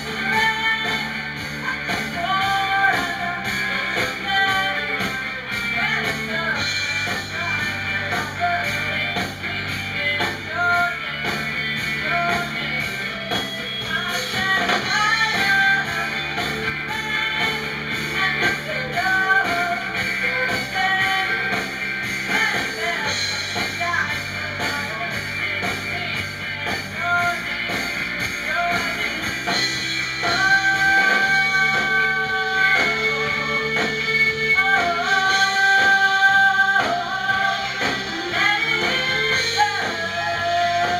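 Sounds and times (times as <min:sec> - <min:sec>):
rock and roll song: 0:00.0 - 0:40.9.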